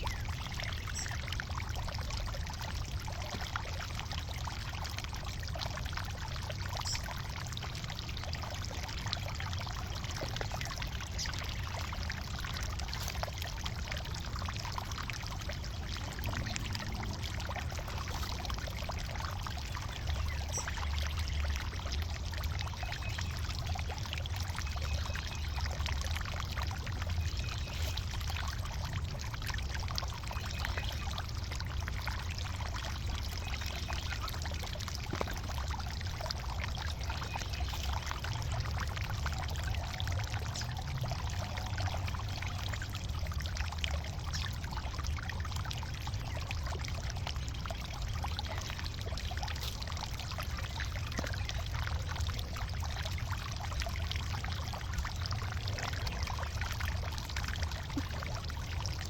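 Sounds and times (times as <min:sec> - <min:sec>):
steady low rumble: 0:09.8 - 0:20.8.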